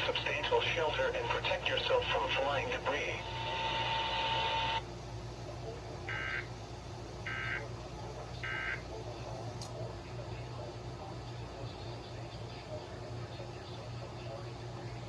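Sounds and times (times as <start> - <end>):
steady electronic buzz: 3.2 - 4.8.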